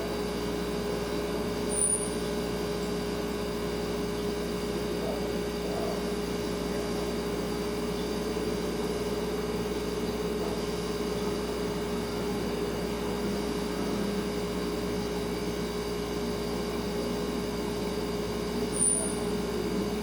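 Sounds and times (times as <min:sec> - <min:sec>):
refrigerator humming: 0:00.0 - 0:20.0
high-pitched chirp: 0:01.7 - 0:02.3, 0:18.7 - 0:19.4.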